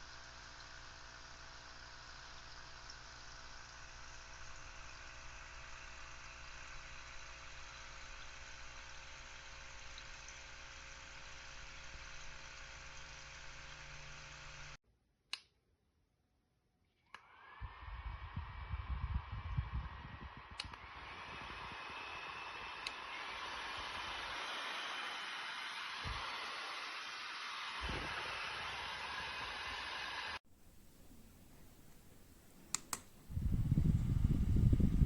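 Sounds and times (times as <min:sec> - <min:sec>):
desk fan whirring: 0:17.2 - 0:35.0
short clicks: 0:32.7 - 0:33.2.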